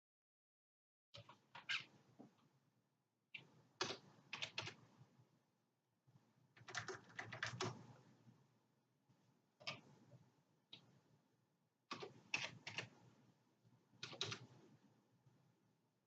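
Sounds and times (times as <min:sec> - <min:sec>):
faint keyboard typing: 0:03.4 - 0:04.9, 0:06.5 - 0:08.0, 0:09.6 - 0:10.0, 0:11.9 - 0:13.0, 0:14.0 - 0:14.6.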